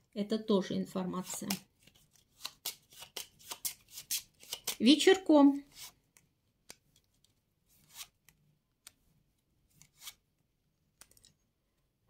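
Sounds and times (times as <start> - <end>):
playing cards tapping and rustling: 1.2 - 4.8.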